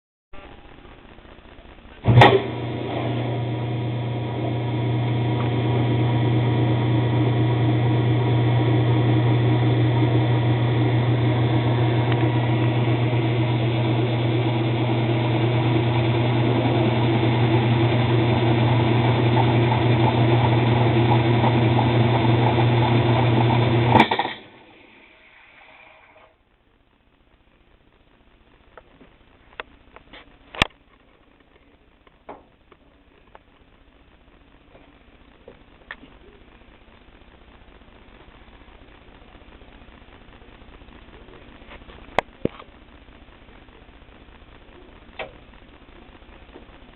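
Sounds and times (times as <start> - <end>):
washing machine spinning: 2.0 - 25.4.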